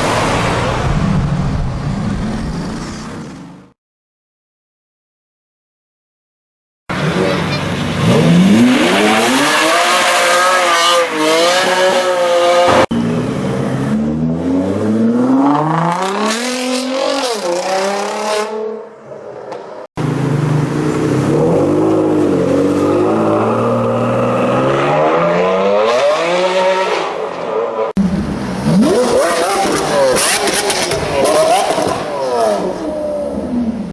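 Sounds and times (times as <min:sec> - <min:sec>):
car engine revving and accelerating: 0:00.0 - 0:03.7, 0:06.9 - 0:18.8, 0:20.0 - 0:33.7.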